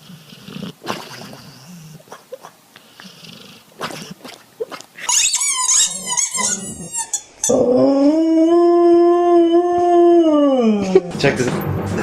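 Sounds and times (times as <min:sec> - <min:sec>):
dog squealing: 0:03.8 - 0:08.1.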